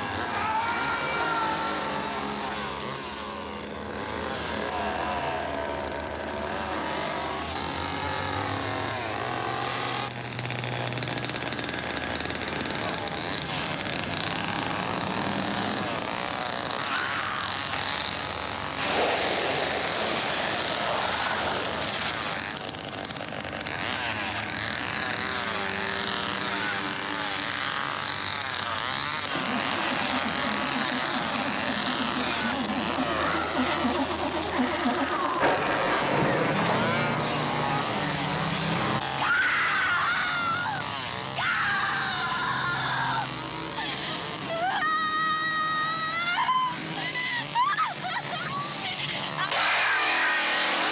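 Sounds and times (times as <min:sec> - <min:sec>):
chainsaw engine revving: 0:00.0 - 0:50.9
woman screaming: 0:00.1 - 0:02.7, 0:39.2 - 0:43.4, 0:44.5 - 0:48.8.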